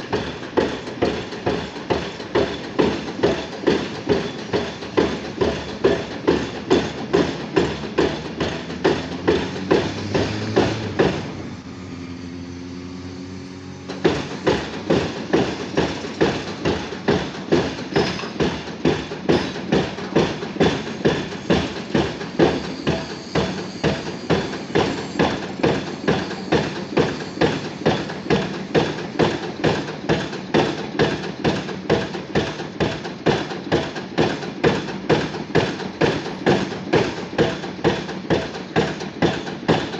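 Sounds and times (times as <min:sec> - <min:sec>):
hydraulic hammer striking a pile: 0:00.0 - 0:11.4, 0:13.9 - 0:39.9
engine drone: 0:07.6 - 0:17.8.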